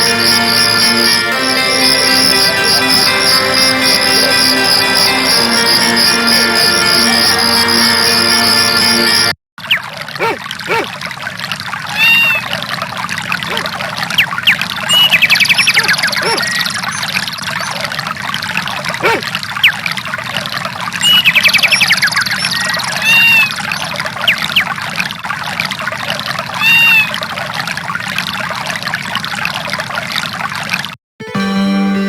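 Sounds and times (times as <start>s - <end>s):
running water: 0.0s - 31.0s
birds chirping: 13.5s - 17.8s, 21.0s - 24.7s.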